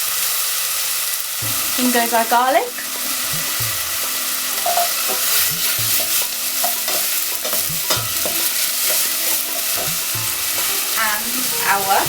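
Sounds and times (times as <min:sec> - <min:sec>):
onions sizzling in hot oil: 0:00.0 - 0:12.0
spoon stirring in a pot: 0:02.8 - 0:12.0.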